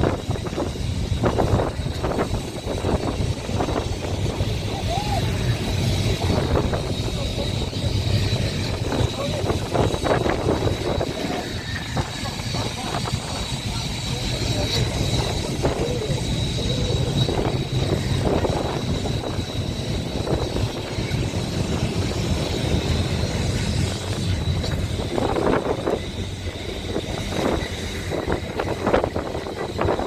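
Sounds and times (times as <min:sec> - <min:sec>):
noisy rush: 0:00.0 - 0:30.0
tram wheels rumbling on rails: 0:00.0 - 0:30.0.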